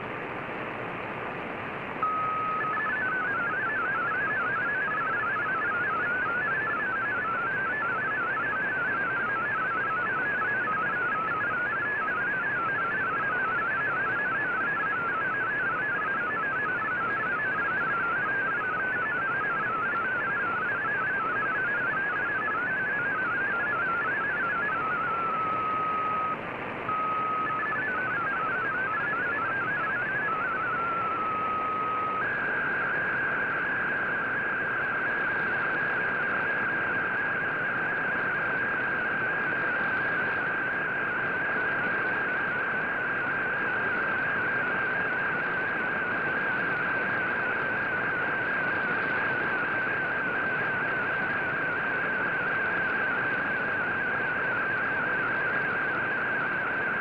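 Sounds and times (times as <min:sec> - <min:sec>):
receiver hiss: 0:00.0 - 0:57.0
warbling data signal tone: 0:02.0 - 0:45.2.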